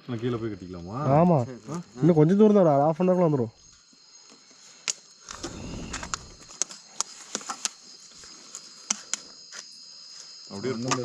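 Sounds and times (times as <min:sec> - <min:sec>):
crickets chirring: 0:00.0 - 0:11.0
low rumble: 0:05.3 - 0:06.5
sharp clicks: 0:05.3 - 0:06.7.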